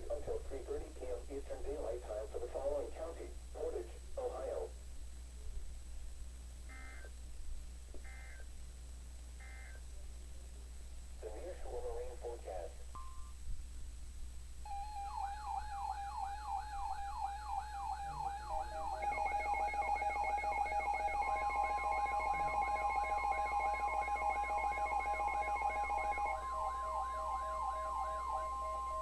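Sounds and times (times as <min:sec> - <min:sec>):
pulsing tones: 0:14.6 - 0:29.0
siren-like sweeping tone: 0:14.7 - 0:29.0
steady beep: 0:14.7 - 0:29.0.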